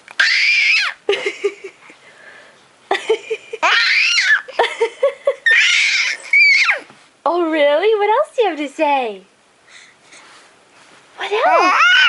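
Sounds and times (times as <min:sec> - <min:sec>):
baby squealing: 0:00.2 - 0:01.0, 0:03.6 - 0:04.5, 0:05.4 - 0:06.9, 0:11.5 - 0:12.0.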